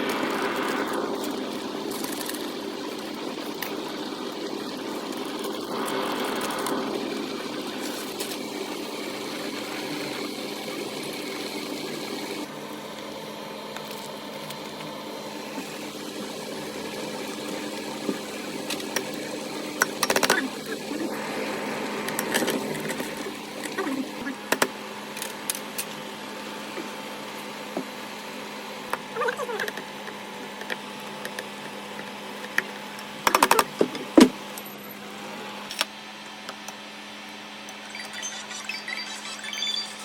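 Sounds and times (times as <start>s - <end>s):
steady mechanical hum: 0.0s - 40.0s.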